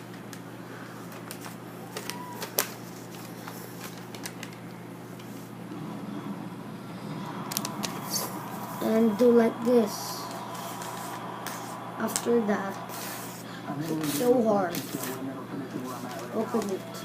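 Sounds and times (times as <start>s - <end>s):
low hum: 4.7s - 17.0s.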